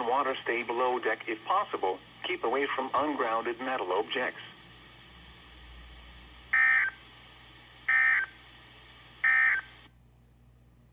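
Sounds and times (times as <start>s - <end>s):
low hiss: 0.0s - 9.2s
digital data tone bursts: 6.6s - 7.0s, 9.2s - 9.7s.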